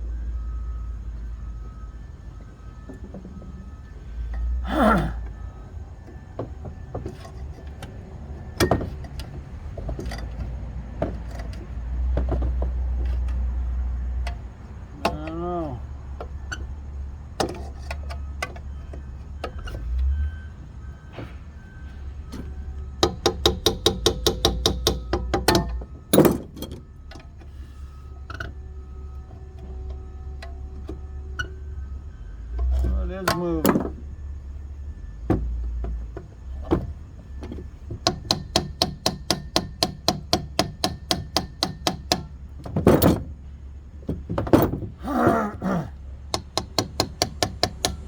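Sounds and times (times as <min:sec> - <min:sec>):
hand tools clicking on metal: 0:23.0 - 0:27.2, 0:38.0 - 0:42.3, 0:46.3 - 0:48.0.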